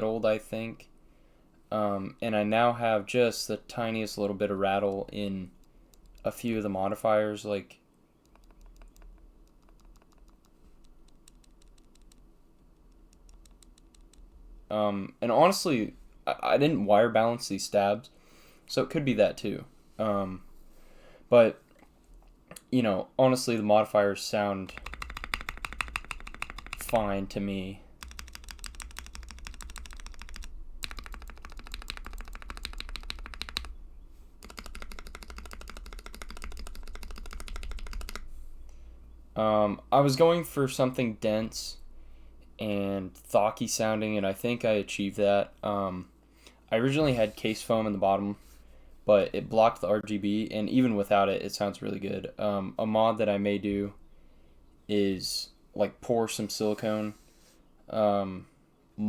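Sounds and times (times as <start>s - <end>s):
mechanical keyboard keys clacking: 8.3s - 12.2s, 24.7s - 27.0s, 28.0s - 33.7s, 34.4s - 38.2s
keyboard stabilizer rattle: 24.8s - 27.0s.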